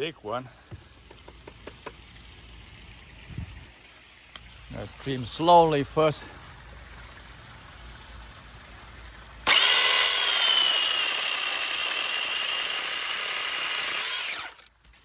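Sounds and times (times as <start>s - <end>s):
electric chainsaw whining: 9.4s - 14.7s.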